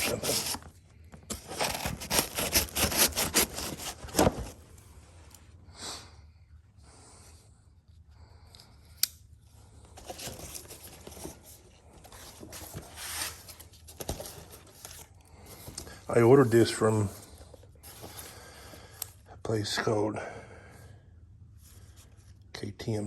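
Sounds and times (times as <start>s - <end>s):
knife cutting packing tape: 0.0s - 0.7s, 1.3s - 4.6s
cardboard rustling: 0.0s - 5.0s, 9.9s - 18.4s.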